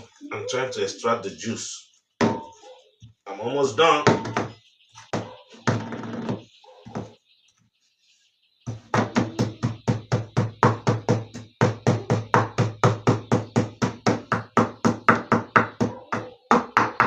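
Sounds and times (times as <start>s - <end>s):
pestle pounding in a mortar: 8.7s - 17.0s.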